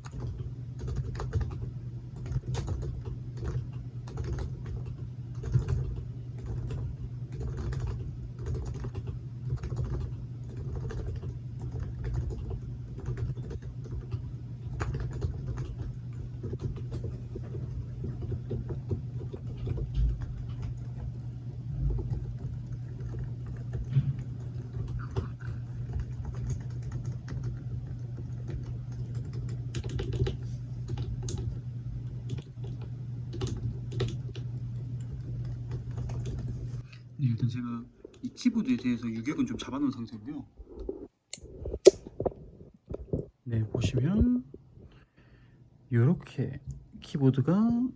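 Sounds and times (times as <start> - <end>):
keyboard typing: 0.0 - 36.6
steady low hum: 0.0 - 47.9.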